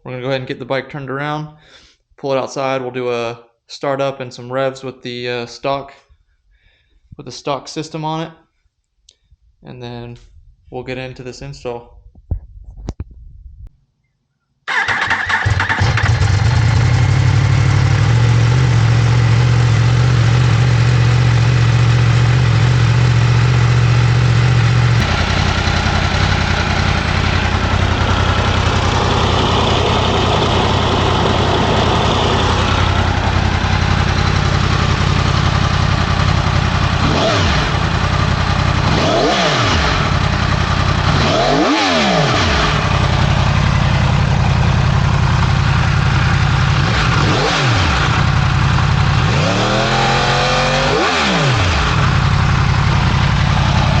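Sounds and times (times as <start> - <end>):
motorcycle engine idling: 14.7 - 54.0
motorcycle throttle blips: 14.7 - 54.0.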